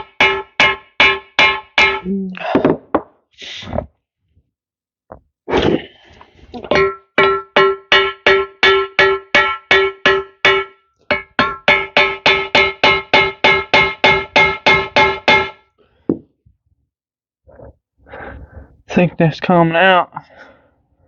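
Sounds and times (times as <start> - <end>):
hammer clanging on steel: 0.0 - 2.2, 6.7 - 15.6.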